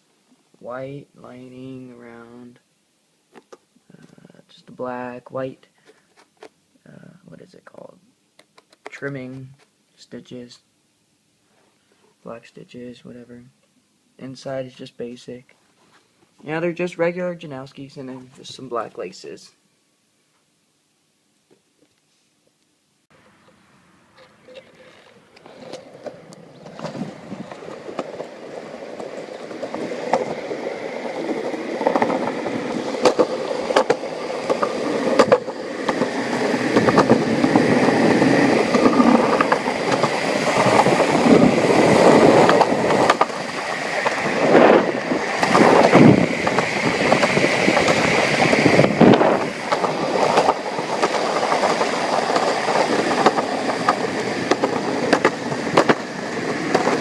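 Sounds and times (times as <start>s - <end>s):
longboard wheels rolling on pavement: 23.2s - 57.0s
sharp clacks: 25.4s - 57.0s.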